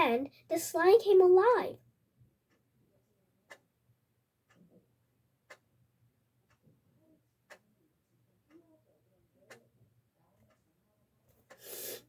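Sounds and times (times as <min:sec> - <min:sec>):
clock ticking: 0:00.0 - 0:01.8, 0:05.4 - 0:05.7, 0:06.4 - 0:06.7, 0:07.4 - 0:07.6.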